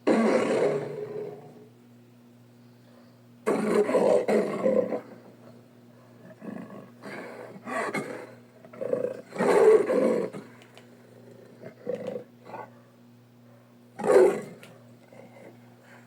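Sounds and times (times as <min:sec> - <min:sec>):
big cat roars and growls: 0:00.0 - 0:01.6.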